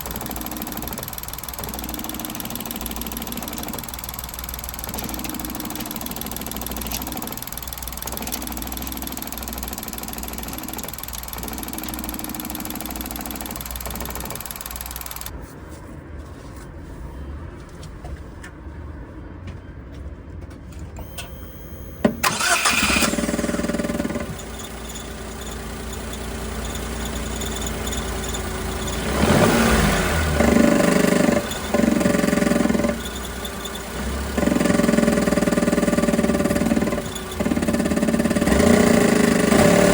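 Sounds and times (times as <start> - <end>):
car engine running: 0.0 - 15.3, 21.0 - 39.9
sharp click: 0.0 - 15.3
droning squealing engine note: 21.0 - 39.9.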